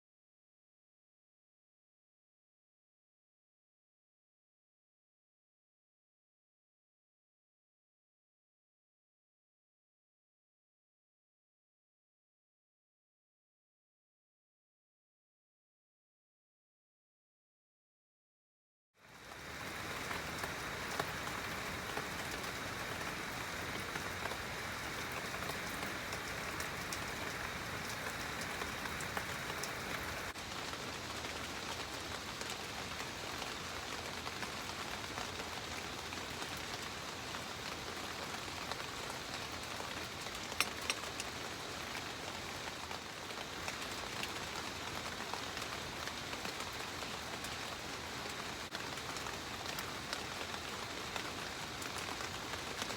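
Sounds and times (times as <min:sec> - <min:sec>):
raindrops ticking sharply: 0:19.0 - 0:52.9
steady rain falling: 0:19.0 - 0:52.9.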